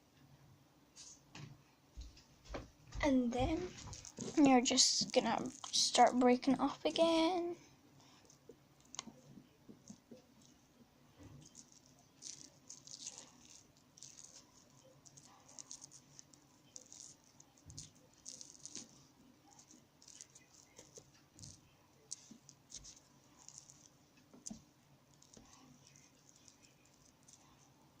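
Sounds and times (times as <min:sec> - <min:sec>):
soft low thumps: 0:02.0 - 0:04.4
wet paper crackling in hands: 0:03.0 - 0:07.2, 0:11.4 - 0:28.0.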